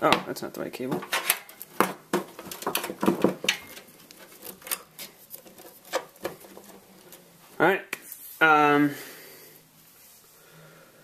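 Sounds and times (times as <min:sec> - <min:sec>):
plastic connectors clicking and rattling: 0:00.9 - 0:07.2.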